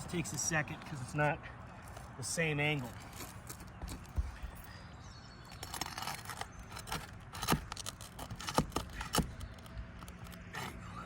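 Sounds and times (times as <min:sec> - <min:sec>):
metal tool scraping under shingles: 0:05.5 - 0:10.9.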